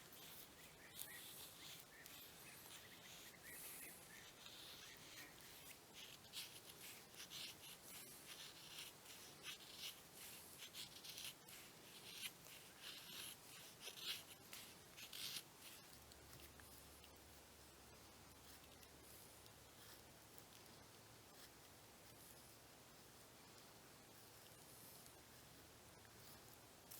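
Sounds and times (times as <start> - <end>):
knife shaving wood: 0.0 - 17.2.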